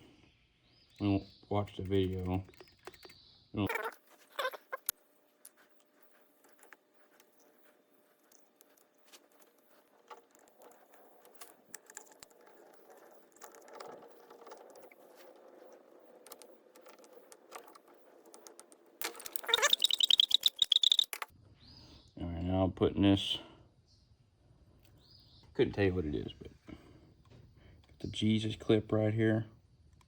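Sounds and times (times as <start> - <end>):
small metal parts clicking: 3.8 - 21.3.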